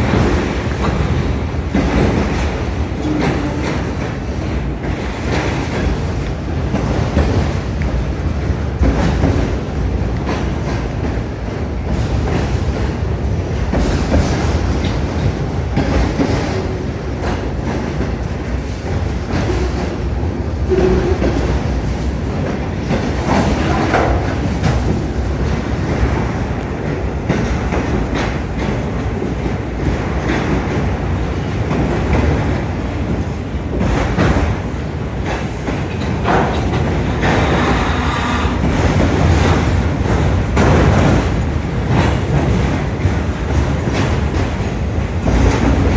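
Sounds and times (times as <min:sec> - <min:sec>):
freight train rumbling past: 0:00.0 - 0:45.9
wheels clicking over rail joints: 0:00.0 - 0:45.9
wheel squeals: 0:37.2 - 0:39.0.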